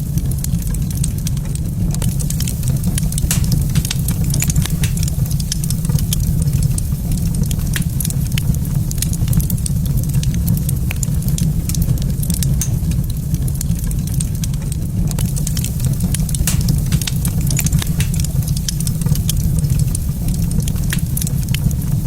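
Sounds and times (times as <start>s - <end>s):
fire low rumble: 0.0s - 22.0s
wood fire crackling and popping: 0.0s - 22.0s.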